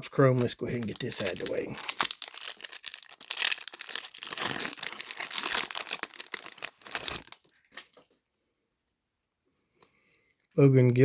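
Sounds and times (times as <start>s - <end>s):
foil wrapper tearing and crinkling: 0.2s - 7.9s.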